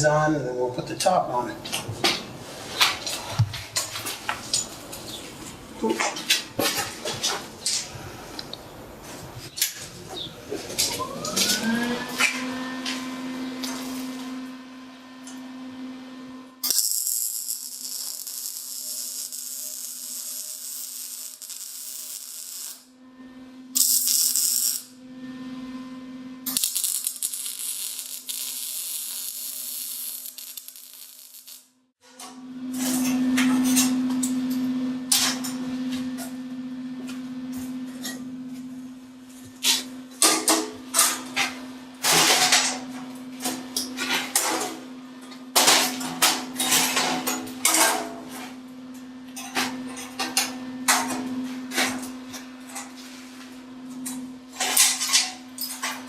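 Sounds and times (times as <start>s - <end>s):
welder arc hissing and crackling: 16.6s - 22.9s, 23.8s - 24.9s, 26.5s - 31.8s.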